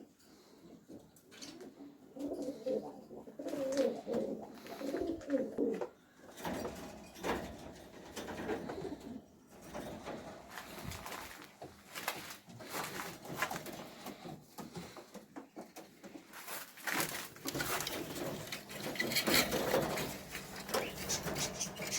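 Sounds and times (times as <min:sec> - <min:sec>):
pigeons cooing: 0:00.7 - 0:06.8, 0:08.1 - 0:11.1, 0:17.5 - 0:21.9.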